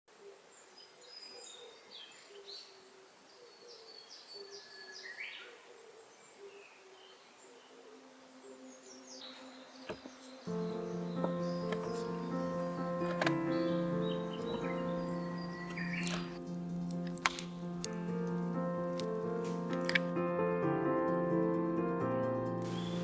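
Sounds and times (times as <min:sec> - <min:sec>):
birds chirping and whistling: 0:08.5 - 0:20.1, 0:22.6 - 0:23.0.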